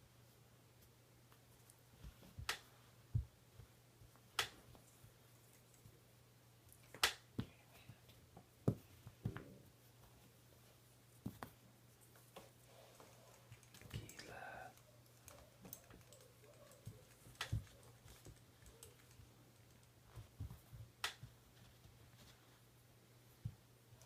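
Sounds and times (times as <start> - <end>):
faint hum: 12.6 - 20.7
sharp clicks and light knocks: 13.5 - 21.4.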